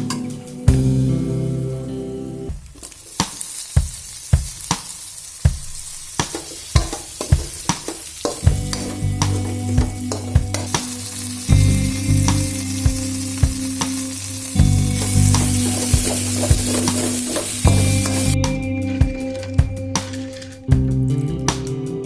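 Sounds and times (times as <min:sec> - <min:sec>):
curry sizzling in a pan: 0:02.8 - 0:19.0.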